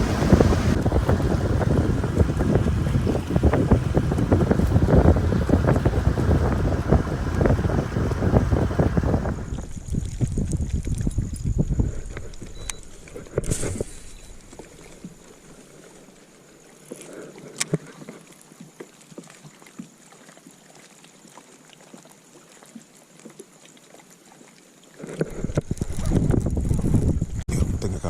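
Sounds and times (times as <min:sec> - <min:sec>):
wind gusting on microphone: 0:00.0 - 0:14.8, 0:25.3 - 0:28.0
light water noise: 0:00.0 - 0:27.4.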